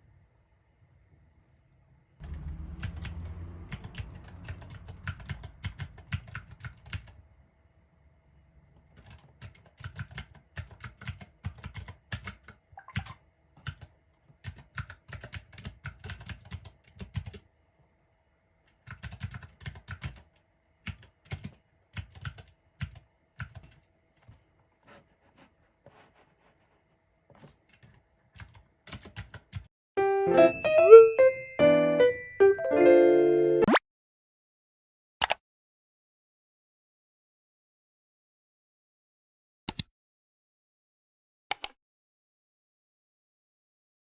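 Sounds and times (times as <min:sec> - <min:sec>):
mechanical keyboard typing: 0:02.8 - 0:07.2, 0:08.9 - 0:17.4, 0:18.8 - 0:23.8, 0:27.4 - 0:29.7.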